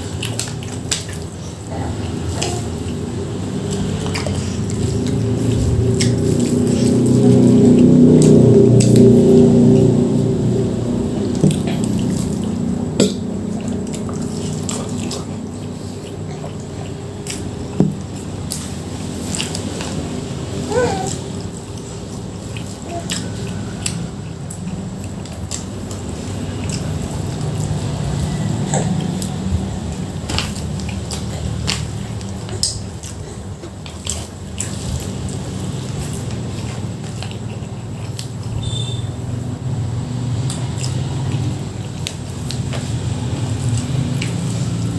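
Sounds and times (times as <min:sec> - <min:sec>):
wet chewing: 0:00.0 - 0:44.9.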